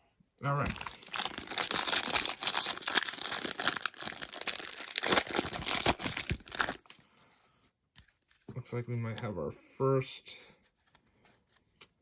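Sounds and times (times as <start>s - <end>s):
card pack wrapper crinkling and tearing: 0.7s - 7.0s.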